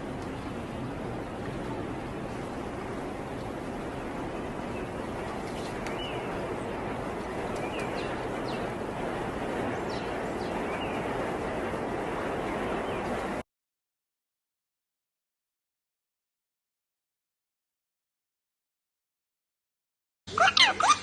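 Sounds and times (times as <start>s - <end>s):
rushing background noise: 0.0s - 13.4s.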